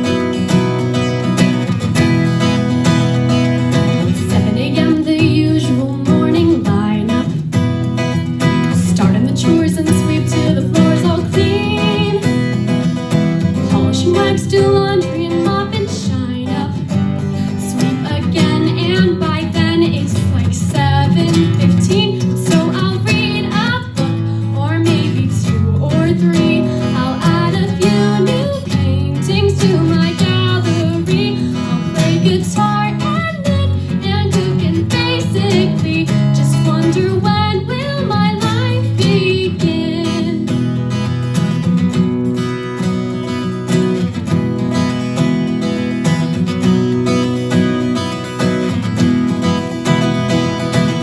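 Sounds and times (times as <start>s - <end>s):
strummed acoustic guitar: 0.0s - 51.0s
woman singing: 4.0s - 7.6s, 8.5s - 40.7s.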